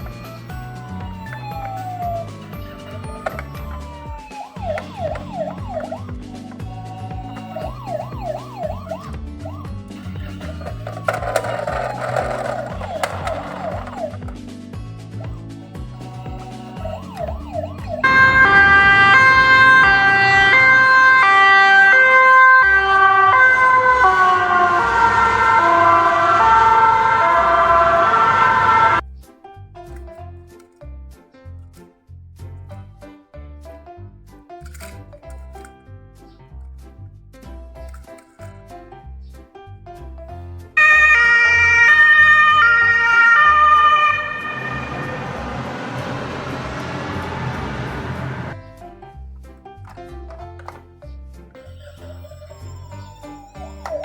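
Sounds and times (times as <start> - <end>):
background music: 0.0 - 54.0
two-tone ambulance siren: 0.4 - 14.4, 15.2 - 29.0, 40.8 - 48.6, 51.6 - 54.0.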